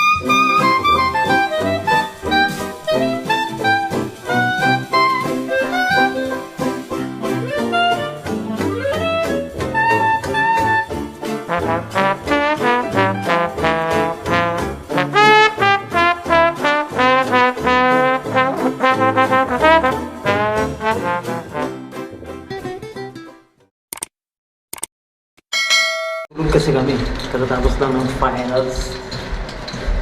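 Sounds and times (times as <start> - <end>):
upbeat jazzy brass music: 0.0 - 22.8.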